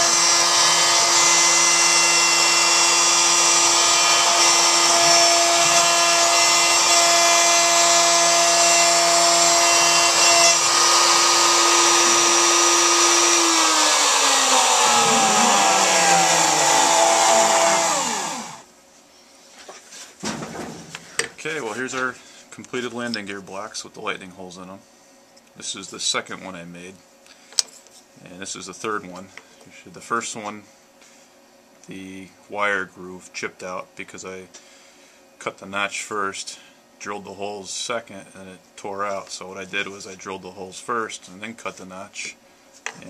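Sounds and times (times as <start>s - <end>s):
router spindle running and winding down: 0.0s - 18.6s.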